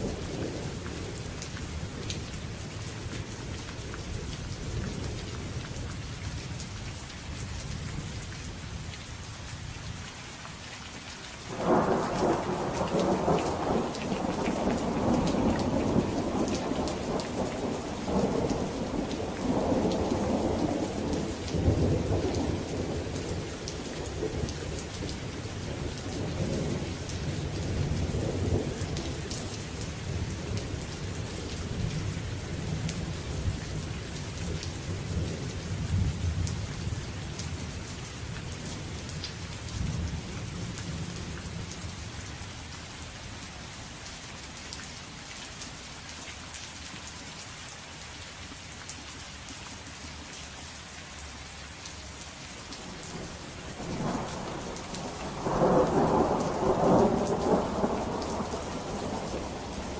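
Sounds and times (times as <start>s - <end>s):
steady rain: 0.0s - 59.9s
thunder rumbling: 11.5s - 23.4s, 52.8s - 59.9s.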